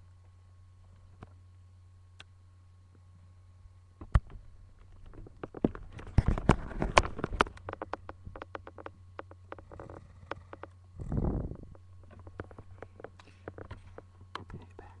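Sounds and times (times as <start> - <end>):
low electrical hum: 0.0 - 15.0
rapid irregular clicks and taps: 4.0 - 10.8, 11.7 - 15.0.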